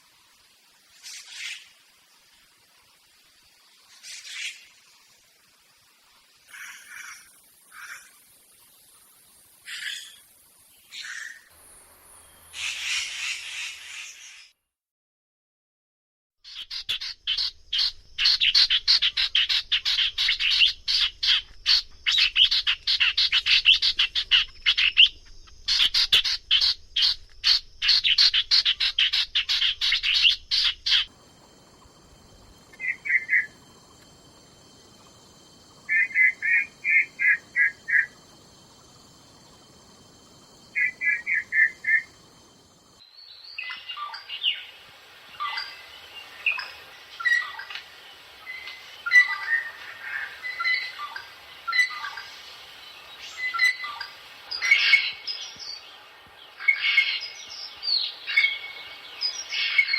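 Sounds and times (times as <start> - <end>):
bird harsh chattering calls: 12.6 - 14.4, 16.5 - 25.1, 25.7 - 31.1.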